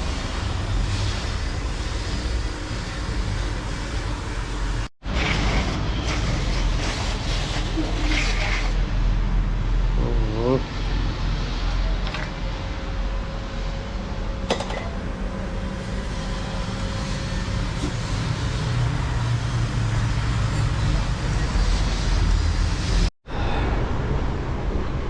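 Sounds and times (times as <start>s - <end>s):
engine and traffic rumble: 0.0s - 25.0s.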